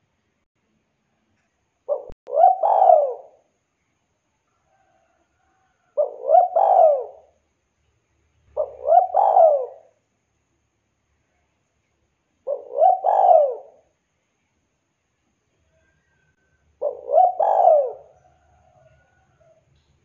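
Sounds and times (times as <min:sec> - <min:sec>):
dove cooing: 0:01.9 - 0:03.4, 0:05.9 - 0:07.4, 0:08.5 - 0:10.0, 0:12.4 - 0:13.9, 0:16.8 - 0:19.2.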